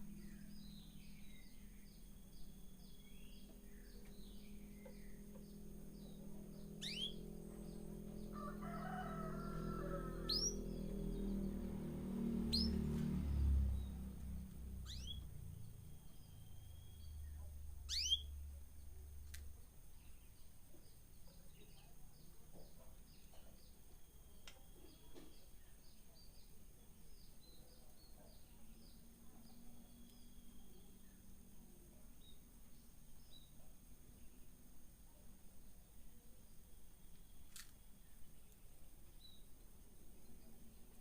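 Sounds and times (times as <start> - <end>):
low rumble: 0.0 - 19.7
birds whistled chirps: 6.8 - 7.2, 14.8 - 15.3, 17.9 - 18.3.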